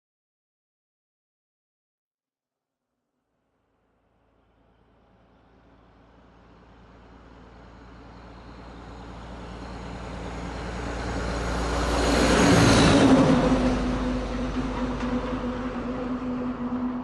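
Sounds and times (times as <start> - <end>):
large truck passing: 4.2 - 17.0.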